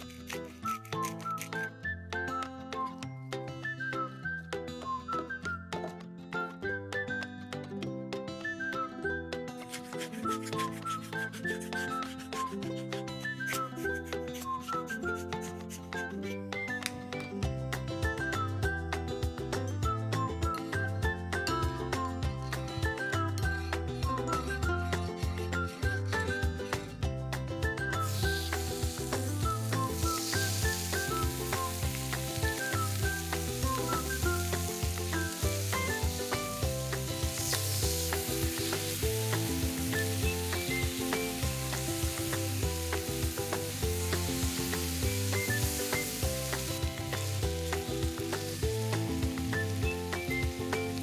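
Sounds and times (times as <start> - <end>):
background music: 0.0 - 51.0
pork sizzling in a pan: 28.0 - 51.0.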